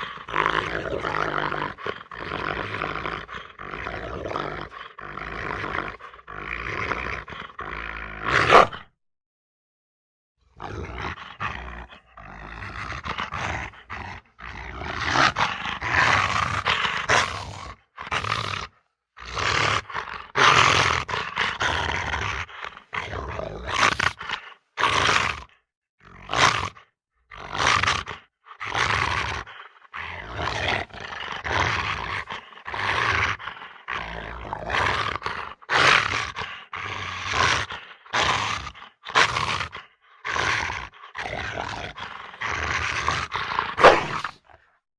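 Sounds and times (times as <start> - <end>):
animal-like roars and growls: 0.0 - 8.9, 10.5 - 44.7.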